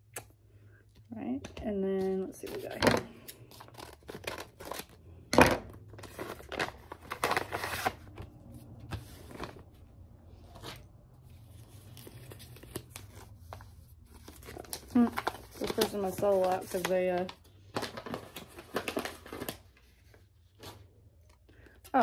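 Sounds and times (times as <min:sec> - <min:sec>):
package paper ripping: 0:03.4 - 0:05.0, 0:11.7 - 0:19.7
plastic wrapping crinkling: 0:11.6 - 0:20.2.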